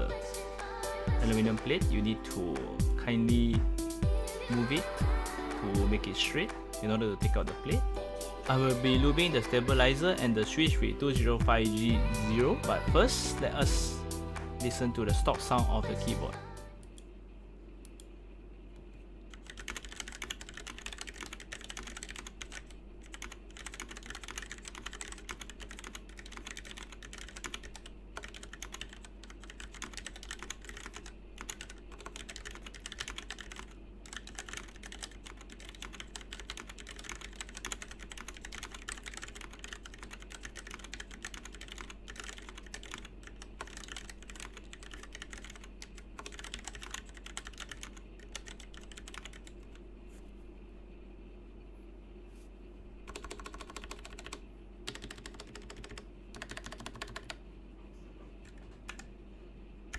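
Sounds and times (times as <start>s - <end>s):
mechanical keyboard typing: 19.3s - 49.8s, 53.1s - 57.4s, 58.4s - 59.1s.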